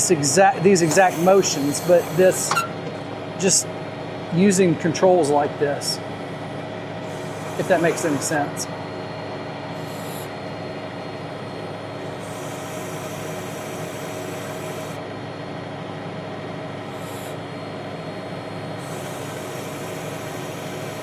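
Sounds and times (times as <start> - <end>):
hydraulic hiss: 0.7 - 2.8, 7.0 - 8.6, 12.2 - 15.0, 18.8 - 21.0.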